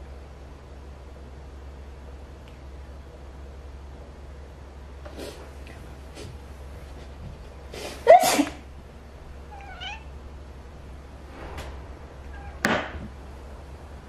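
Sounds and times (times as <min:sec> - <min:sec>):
cat meowing: 0:09.5 - 0:10.1, 0:12.3 - 0:12.7
sudden noisy burst: 0:11.0 - 0:14.0.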